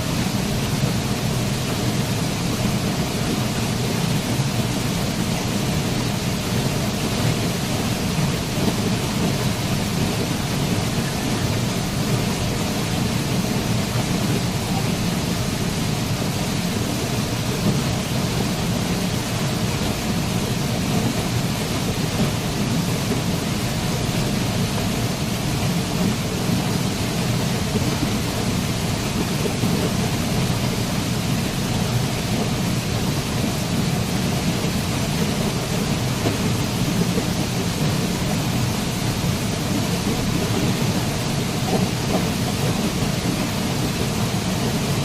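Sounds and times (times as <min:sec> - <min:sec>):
waterfall rushing: 0:00.0 - 0:45.0.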